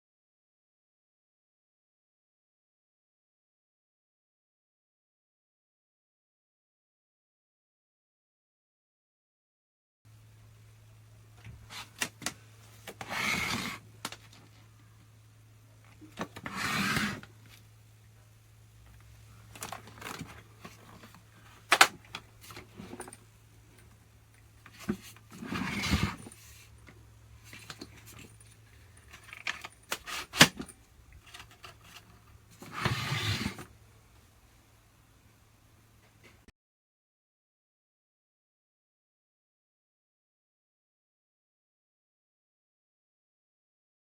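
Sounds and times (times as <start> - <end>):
objects clicking and rattling: 18.9 - 32.8.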